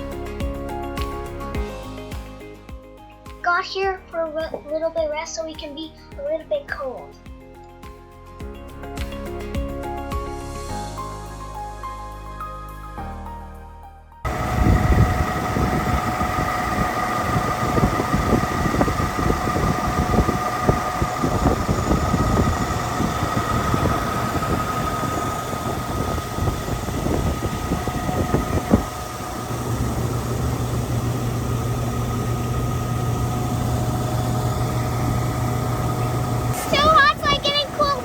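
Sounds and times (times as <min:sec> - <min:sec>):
low even hum: 0:14.3 - 0:38.0
vehicle engine running: 0:14.3 - 0:38.0
whining tones: 0:14.3 - 0:38.0.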